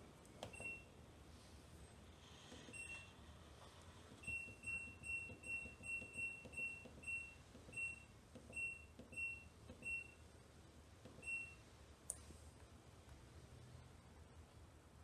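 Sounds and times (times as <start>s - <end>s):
washing machine button beeps: 0.4s - 0.9s, 4.2s - 10.2s, 11.2s - 11.6s.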